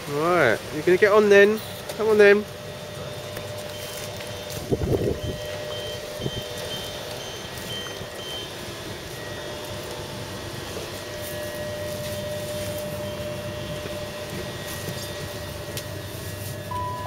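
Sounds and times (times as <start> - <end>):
standing train hum: 0.0 - 17.0
train door warning beeps: 3.7 - 8.6, 16.7 - 17.0
steady tone: 16.7 - 17.0.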